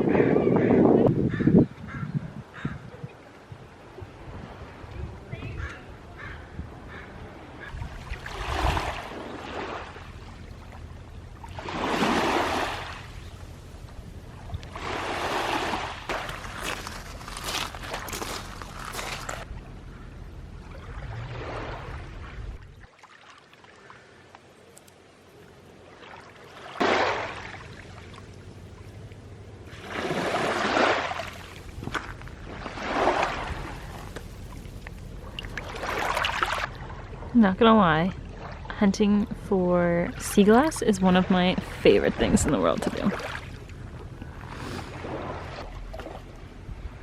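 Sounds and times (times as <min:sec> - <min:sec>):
small waves washing onto shore: 0:07.5 - 0:19.5, 0:29.1 - 0:37.2.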